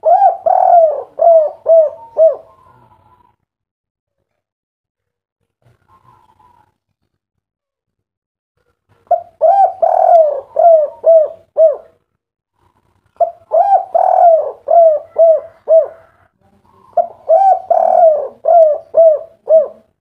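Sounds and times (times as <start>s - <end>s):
dove cooing: 0.0s - 3.4s, 9.0s - 12.0s, 12.6s - 20.0s.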